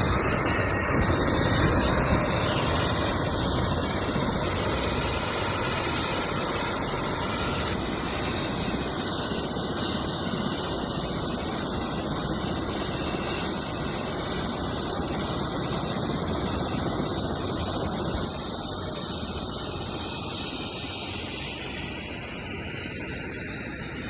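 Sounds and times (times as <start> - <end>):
helicopter rotor hiss: 0.0 - 24.0.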